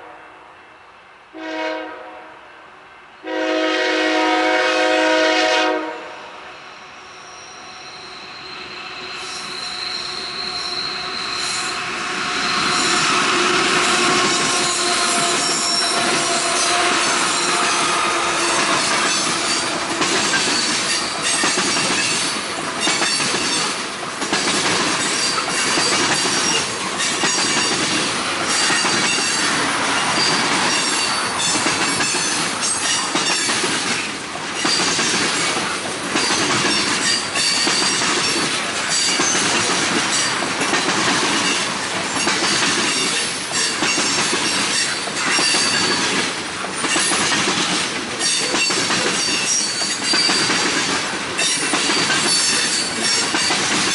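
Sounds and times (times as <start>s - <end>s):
high wheel squeal: 6.5s - 23.6s, 28.5s - 33.5s
wheels clacking over rail joints: 13.7s - 53.9s.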